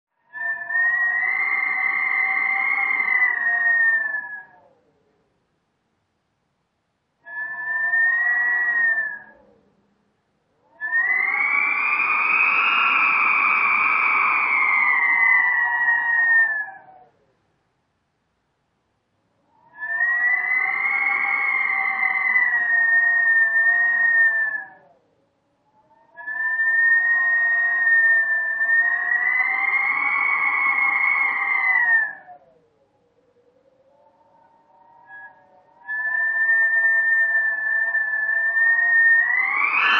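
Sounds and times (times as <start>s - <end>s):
wind howling: 10.6s - 17.2s, 27.1s - 39.9s.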